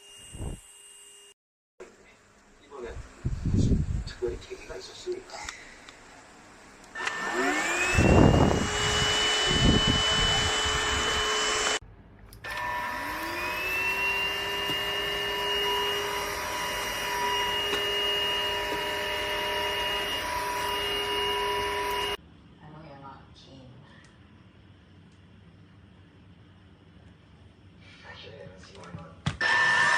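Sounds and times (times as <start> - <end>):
vacuum motor whining: 6.9 - 11.8, 12.4 - 22.2, 29.4 - 29.9.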